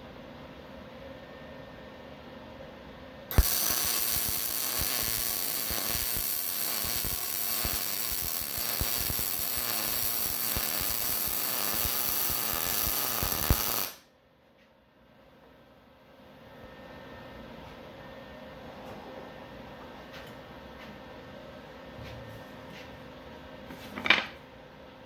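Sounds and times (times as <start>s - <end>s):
welder crackling and popping: 3.3s - 14.0s.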